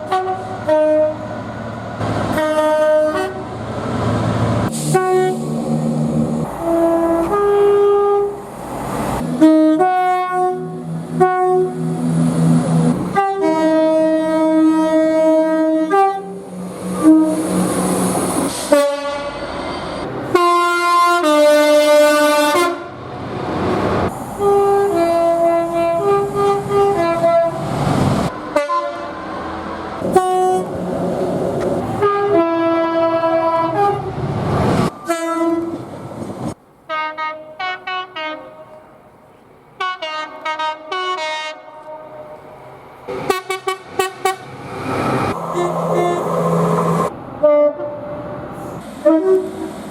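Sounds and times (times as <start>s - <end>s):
train horn blasts: 0.0s - 1.3s, 2.3s - 3.6s, 4.8s - 5.5s, 6.4s - 8.4s, 9.2s - 12.2s, 13.1s - 17.7s, 18.5s - 19.4s, 20.3s - 23.0s, 24.4s - 27.6s, 28.5s - 29.3s, 30.0s - 30.8s, 32.0s - 34.1s, 35.0s - 35.9s, 36.9s - 38.8s, 39.8s - 42.4s, 43.1s - 44.5s, 45.3s - 48.2s, 49.0s - 49.7s
rumbling rail noise: 0.0s - 49.9s.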